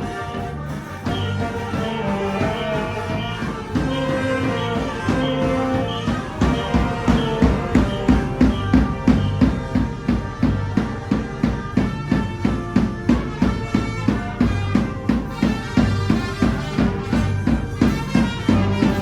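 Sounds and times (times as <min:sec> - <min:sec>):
steady drum beat: 0:00.0 - 0:19.0
sustained melody notes: 0:00.0 - 0:19.0.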